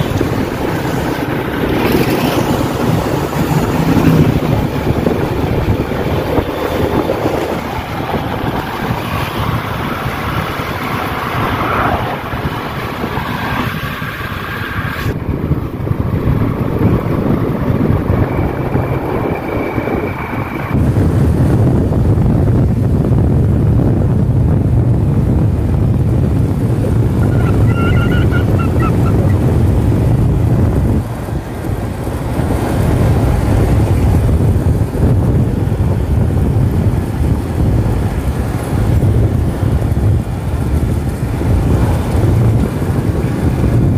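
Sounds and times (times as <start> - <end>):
motorcycle engine running: 0.0 - 11.4, 15.2 - 43.9
wind noise on microphone: 0.0 - 43.9.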